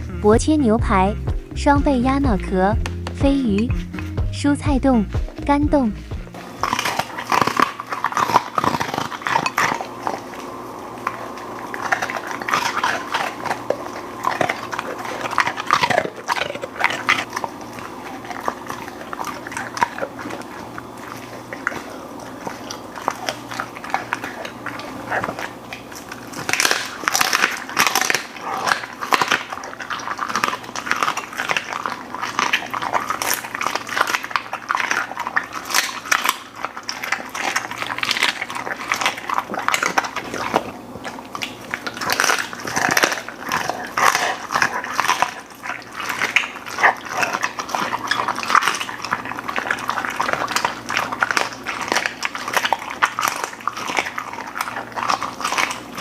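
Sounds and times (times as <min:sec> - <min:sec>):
dog chewing and crunching food: 0:00.0 - 0:56.0.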